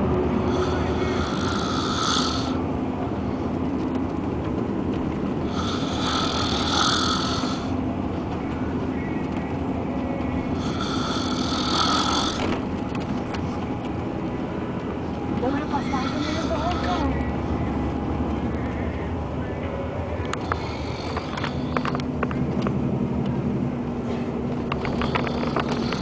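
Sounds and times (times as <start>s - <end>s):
steady low rumble: 0.0s - 26.0s
person snoring: 0.5s - 2.6s, 5.5s - 7.7s, 10.6s - 12.4s.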